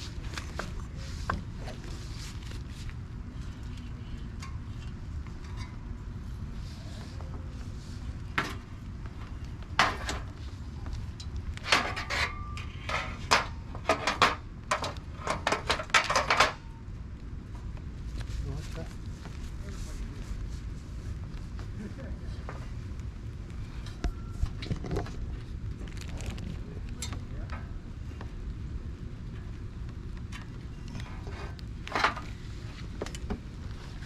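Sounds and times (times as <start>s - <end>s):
steady low rumble: 0.0s - 34.0s
metal parts knocking and clanking: 11.7s - 16.6s.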